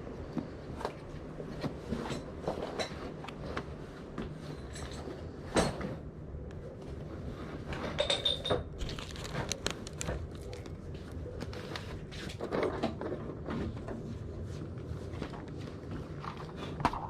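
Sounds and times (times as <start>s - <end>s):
objects knocking and clattering: 7.7s - 10.8s.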